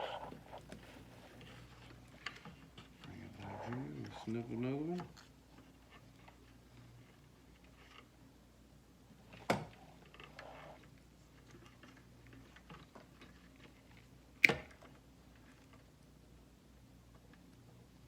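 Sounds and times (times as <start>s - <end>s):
rustling of wires: 0.0s - 8.3s.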